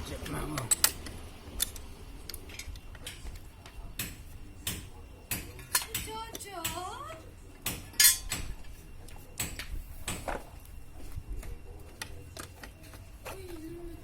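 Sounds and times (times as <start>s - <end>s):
sharp metallic clicks and knocks: 0.2s - 6.8s.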